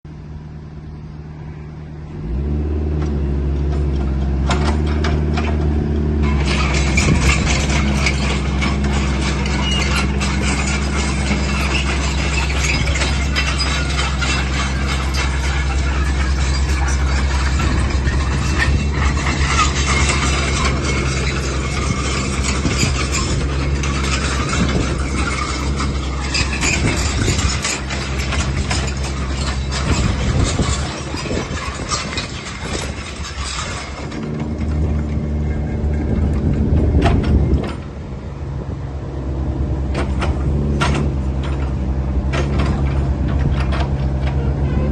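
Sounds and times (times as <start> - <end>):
excavator diesel engine running: 0.1 - 44.9
mechanical squeaks and clatter: 3.0 - 38.8, 39.7 - 44.9.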